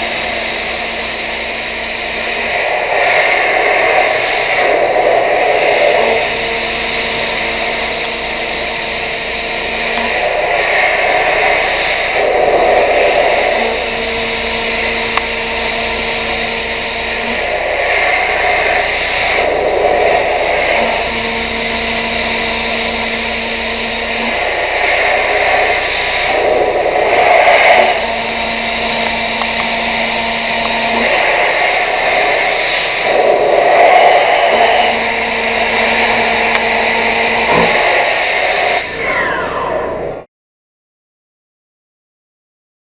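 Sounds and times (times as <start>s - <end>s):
milling machine cutting metal: 0.0s - 40.2s
lower hum of cutter engaging: 11.3s - 24.6s, 25.2s - 31.2s, 32.8s - 40.2s.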